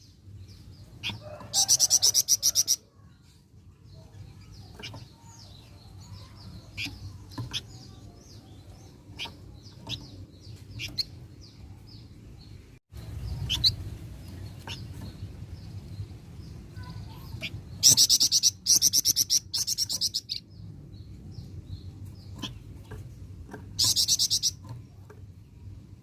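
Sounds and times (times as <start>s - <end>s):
songbird calling: 13.1s - 15.7s, 16.8s - 20.5s, 23.7s - 24.9s.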